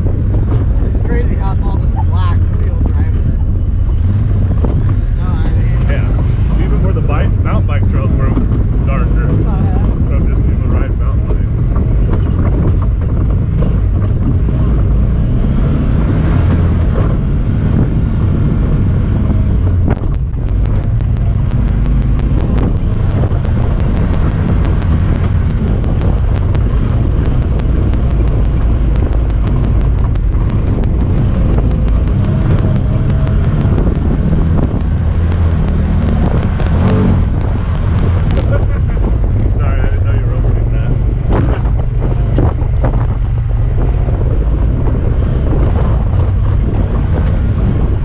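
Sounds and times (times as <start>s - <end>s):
engine running while driving: 0.0s - 48.0s
wind on microphone: 0.0s - 48.0s
rapid fine clicking: 19.4s - 38.9s.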